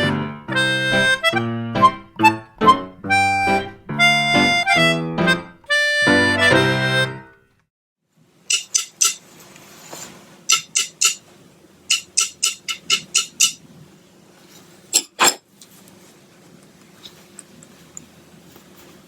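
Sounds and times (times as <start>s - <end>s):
sharp rapping on hard surface: 8.5s - 9.2s, 10.5s - 11.2s, 11.9s - 13.6s.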